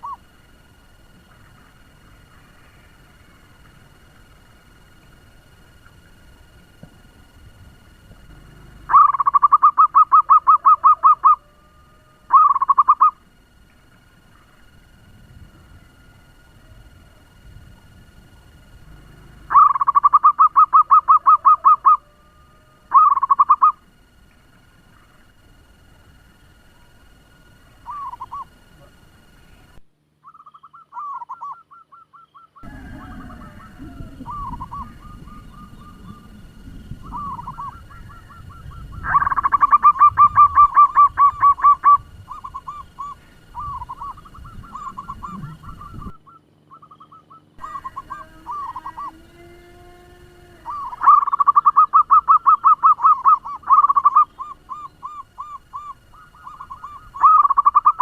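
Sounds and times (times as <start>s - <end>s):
dove calling rapid notes: 0.0s - 0.6s, 7.2s - 15.0s, 15.6s - 29.6s, 30.2s - 58.0s
rapid run of bird notes: 7.2s - 11.4s, 32.6s - 46.4s.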